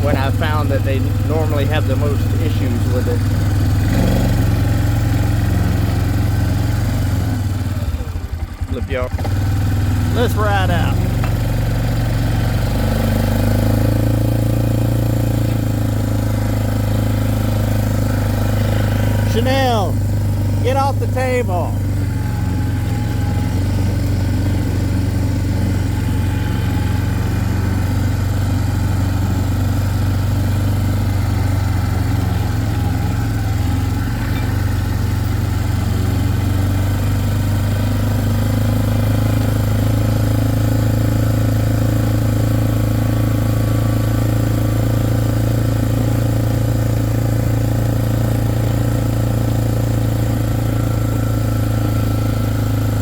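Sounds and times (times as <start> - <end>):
vehicle engine running: 0.0 - 53.0.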